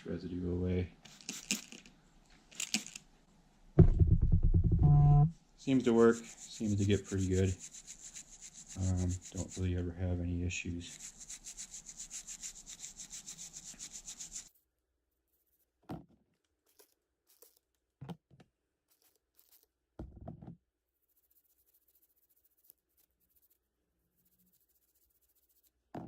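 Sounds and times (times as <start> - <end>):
toothbrush scrubbing circuit board: 1.1 - 1.9, 5.7 - 9.8, 10.7 - 14.5.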